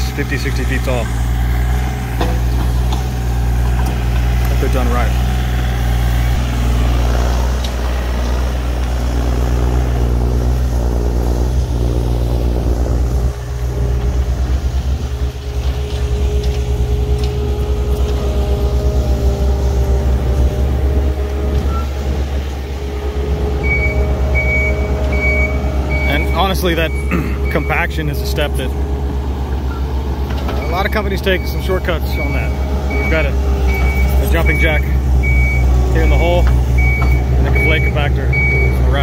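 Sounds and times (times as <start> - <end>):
diesel engines running under load: 0.0 - 39.0
hydraulic whine: 0.0 - 39.0
reversing alarm beeping: 21.6 - 22.0, 23.6 - 28.0, 30.5 - 39.0.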